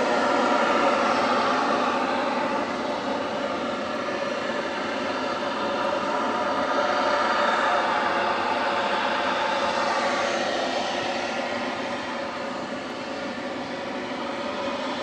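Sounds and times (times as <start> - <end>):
loud droning sky noise: 0.0 - 15.0.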